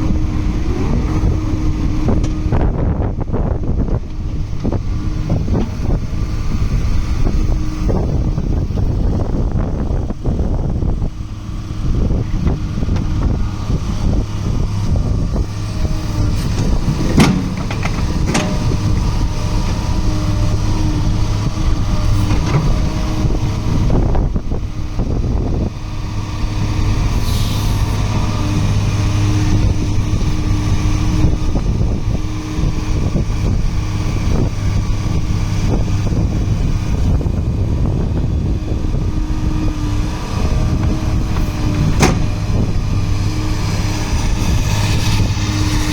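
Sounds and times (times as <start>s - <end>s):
diesel engine running: 0.0s - 45.9s
knocks and clanks: 16.4s - 19.9s, 40.8s - 42.7s.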